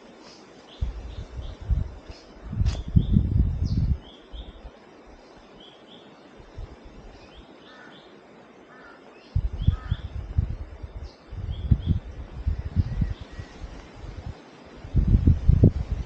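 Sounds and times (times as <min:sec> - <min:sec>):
microphone rumbling bumps: 0:00.8 - 0:04.0
birds chirping: 0:07.1 - 0:13.9.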